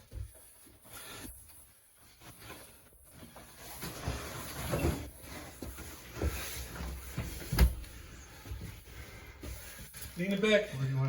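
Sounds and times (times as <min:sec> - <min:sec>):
refrigerator scuffing on a dolly: 0:02.1 - 0:10.5.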